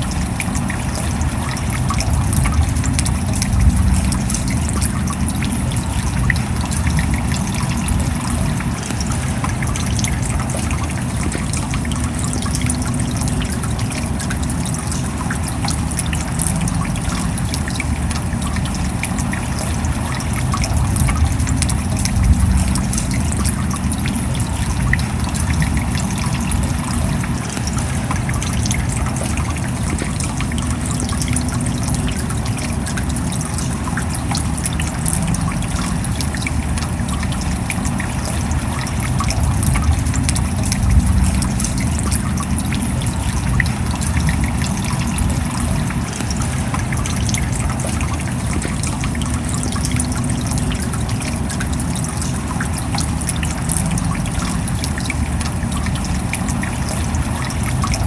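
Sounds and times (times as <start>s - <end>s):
steady rain falling: 0.0s - 58.0s
trickling runoff: 0.0s - 58.0s.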